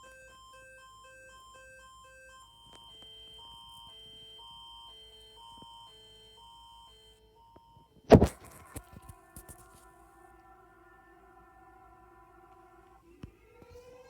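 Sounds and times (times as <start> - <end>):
steady high tone: 0.0 - 9.0.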